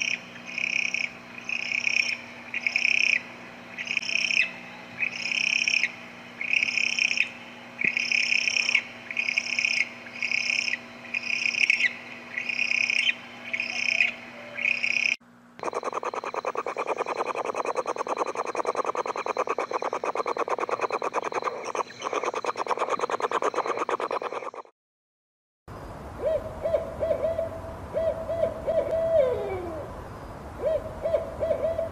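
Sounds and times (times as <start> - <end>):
owl screeching calls: 3.8 - 24.0
rapid ticks: 15.6 - 24.7.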